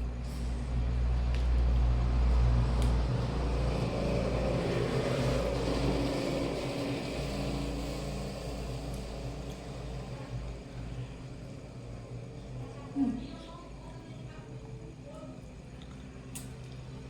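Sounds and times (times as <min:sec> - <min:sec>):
vehicle engine rumbling past: 0:00.0 - 0:12.7.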